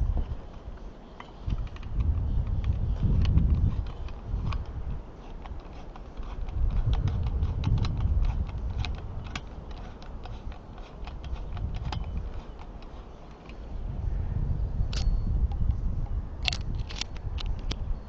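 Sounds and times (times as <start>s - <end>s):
wind buffeting microphone: 0.0s - 18.0s
light clicks from handling hardware: 0.2s - 13.7s.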